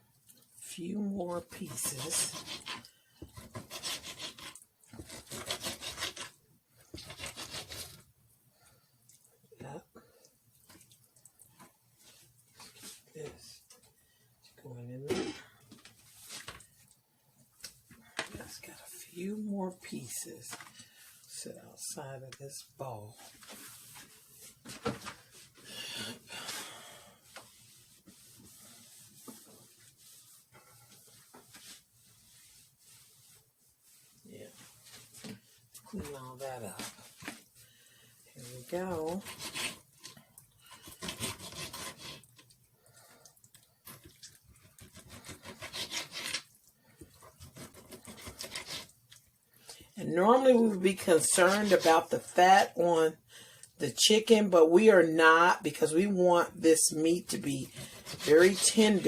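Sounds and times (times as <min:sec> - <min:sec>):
knife sawing through raw chicken: 0:01.6 - 0:06.4, 0:07.0 - 0:08.0, 0:38.7 - 0:39.9, 0:40.7 - 0:42.3, 0:44.7 - 0:46.5, 0:47.3 - 0:48.9, 0:57.4 - 0:59.0.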